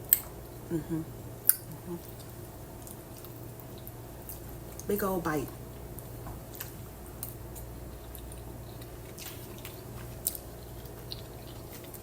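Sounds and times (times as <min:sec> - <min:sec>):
person chewing: 0:00.0 - 0:04.9, 0:05.8 - 0:12.0
steady low hum: 0:00.0 - 0:12.0
wet mouth clicks: 0:00.1 - 0:03.9.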